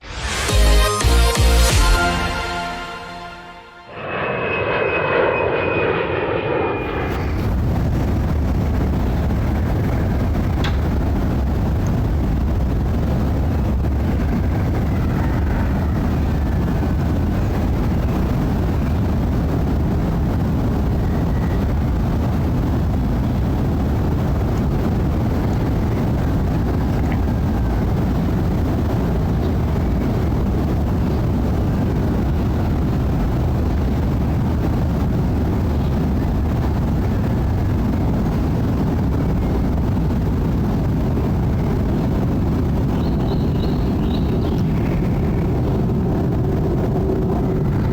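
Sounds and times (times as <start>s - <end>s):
jet engines rumbling overhead: 0.0s - 47.9s.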